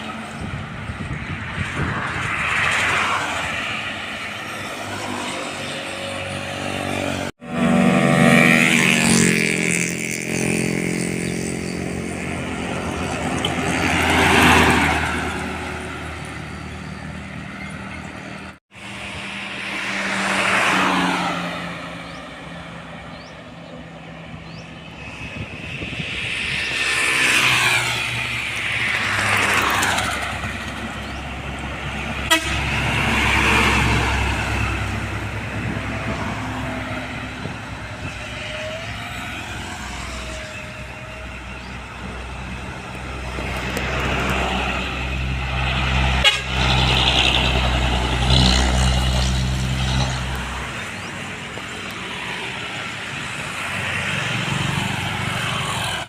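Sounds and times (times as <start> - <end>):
vehicles passing at speed: 0.0 - 56.0
wavering horn tone: 32.2 - 32.8
vehicle horn toot: 32.2 - 33.0, 46.2 - 46.7.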